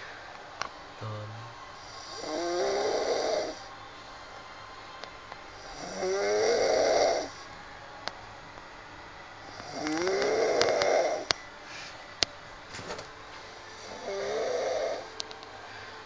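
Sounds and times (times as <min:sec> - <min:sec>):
person snoring heavily: 0:14.0 - 0:15.0.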